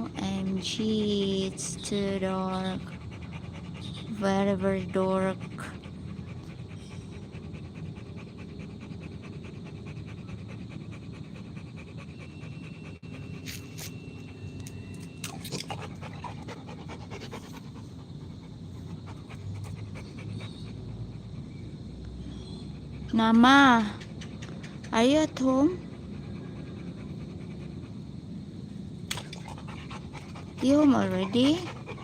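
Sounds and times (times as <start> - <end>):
dog panting rapidly: 0.0 - 14.0, 15.6 - 21.8, 22.4 - 32.0.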